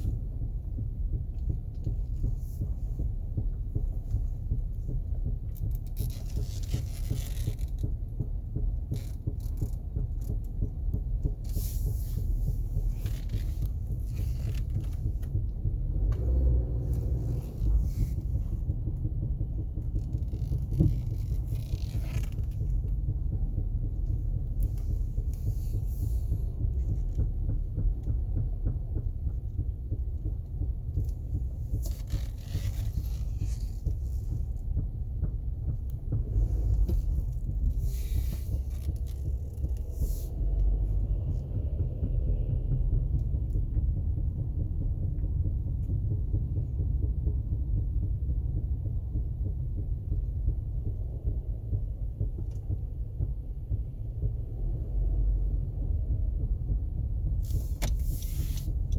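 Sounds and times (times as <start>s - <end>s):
car rumble on the move: 0.0s - 58.9s.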